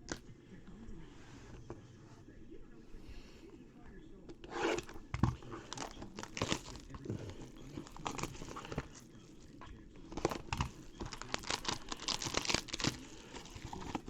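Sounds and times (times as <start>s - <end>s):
plastic wrapper crinkling and tearing: 4.6s - 14.0s
cards rustling as flipped: 4.7s - 14.0s.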